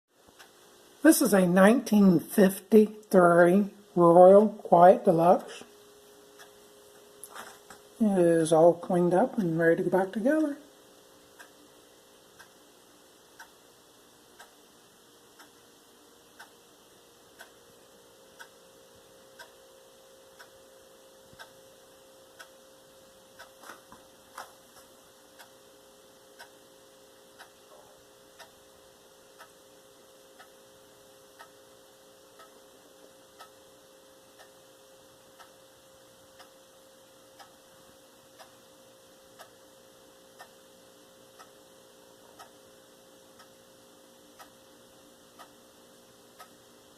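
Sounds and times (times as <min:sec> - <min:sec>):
low steady hum: 0:00.2 - 0:46.9
clock ticking: 0:00.3 - 0:00.6, 0:06.3 - 0:06.6, 0:08.1 - 0:12.6, 0:13.2 - 0:13.7, 0:14.3 - 0:14.7, 0:15.3 - 0:16.6, 0:17.2 - 0:46.9.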